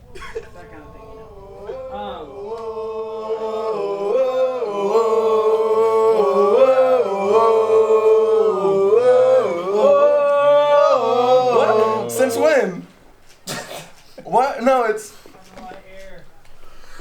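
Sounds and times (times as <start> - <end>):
lower vocal part: 0.0 - 12.6
singing in long held notes: 0.0 - 12.6.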